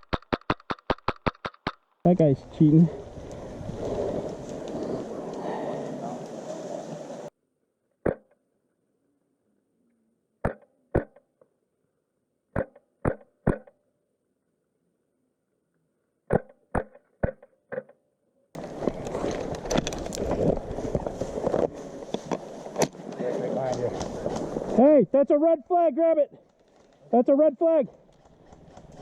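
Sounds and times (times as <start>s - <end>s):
outdoor rustling: 0.0s - 10.0s, 18.6s - 29.0s.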